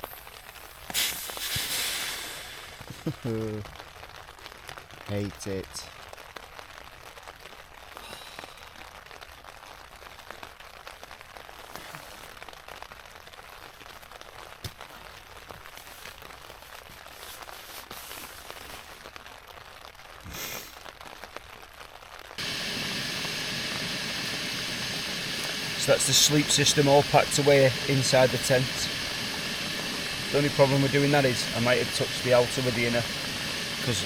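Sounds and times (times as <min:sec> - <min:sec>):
louder steady hiss: 0:00.0 - 0:03.7, 0:22.4 - 0:34.0
rain pattering on a tent: 0:00.0 - 0:34.0.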